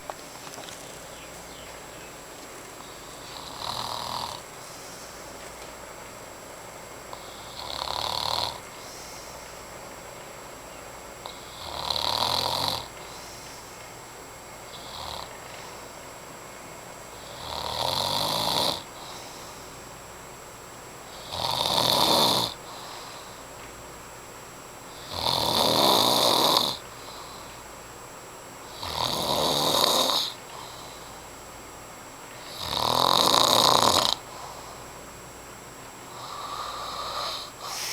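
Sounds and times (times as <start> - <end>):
man snoring: 3.0 - 4.5, 7.1 - 8.6, 11.3 - 12.9, 14.7 - 15.3, 17.2 - 19.1, 21.1 - 22.6, 25.0 - 26.8, 28.7 - 30.4, 32.5 - 34.3, 36.1 - 37.9.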